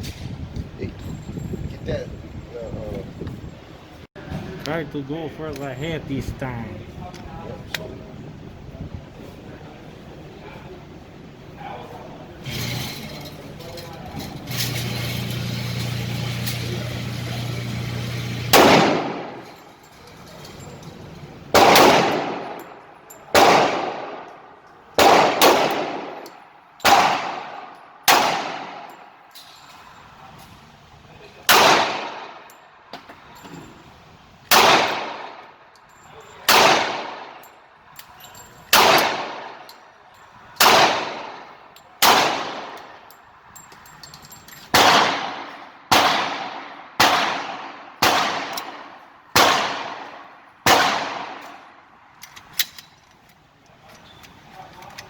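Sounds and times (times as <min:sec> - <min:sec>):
pistol shots with echo: 0:18.5 - 0:19.4, 0:21.5 - 0:24.4, 0:25.0 - 0:29.0, 0:31.5 - 0:32.4, 0:34.5 - 0:35.5, 0:36.4 - 0:37.4, 0:38.7 - 0:39.6, 0:40.6 - 0:43.0, 0:44.7 - 0:51.7.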